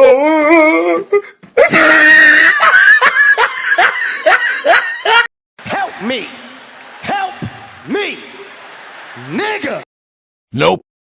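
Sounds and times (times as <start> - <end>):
loud scream: 1.6 - 3.4.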